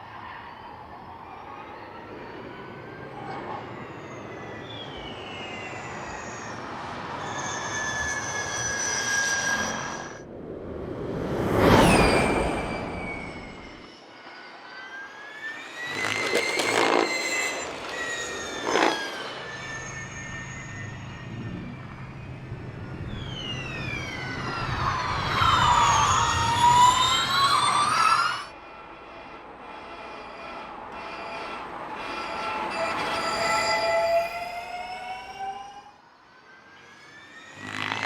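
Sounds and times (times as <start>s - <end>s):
electric race cars whining past: 0.0s - 38.0s.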